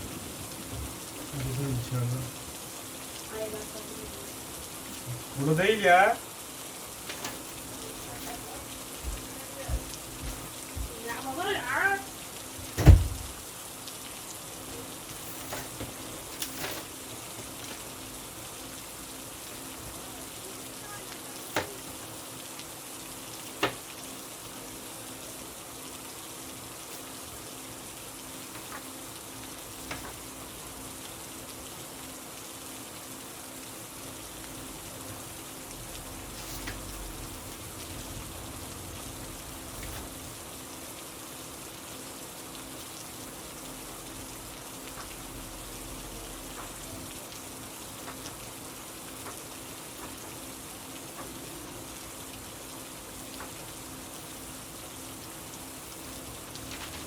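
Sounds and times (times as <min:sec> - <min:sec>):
rain hissing: 0:00.0 - 0:57.0
thump: 0:12.7 - 0:13.3.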